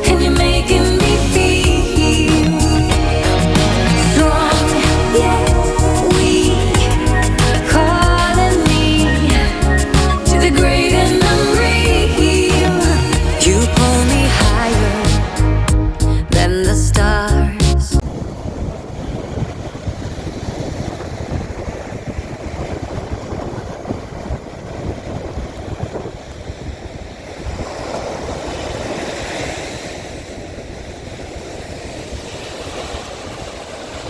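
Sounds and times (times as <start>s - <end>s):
sea waves: 0.0s - 15.7s, 18.0s - 34.0s
music: 0.0s - 18.0s
wind buffeting microphone: 18.0s - 34.0s.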